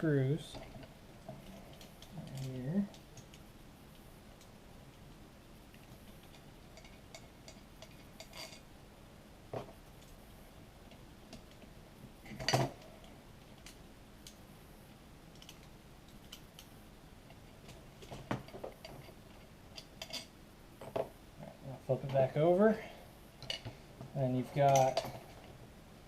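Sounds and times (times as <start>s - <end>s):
metal parts clinking: 24.4s - 25.3s.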